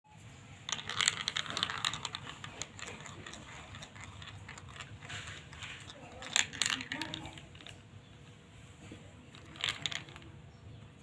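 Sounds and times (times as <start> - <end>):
marbles clattering through plastic run: 0.6 - 7.9, 9.3 - 10.4.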